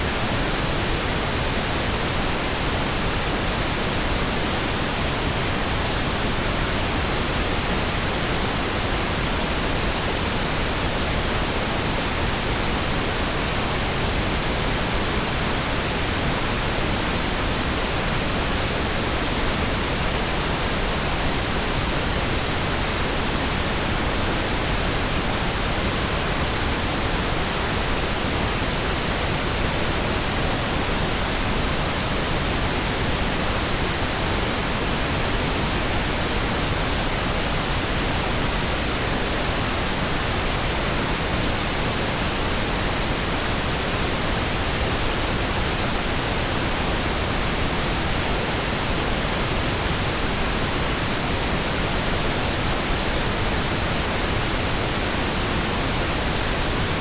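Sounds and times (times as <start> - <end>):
pink noise hiss: 0.0 - 57.0.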